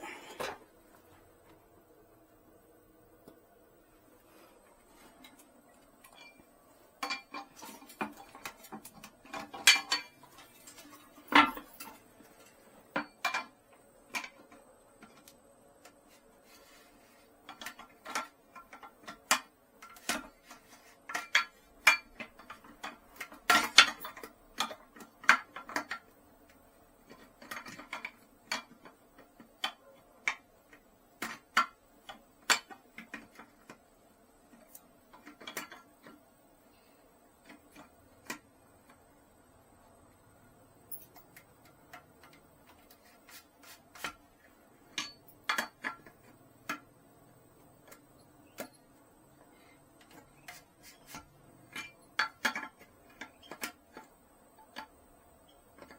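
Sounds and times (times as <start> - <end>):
plastic parts clicking in toilet tank: 17.4 - 33.9, 37.4 - 39.1, 49.4 - 55.9.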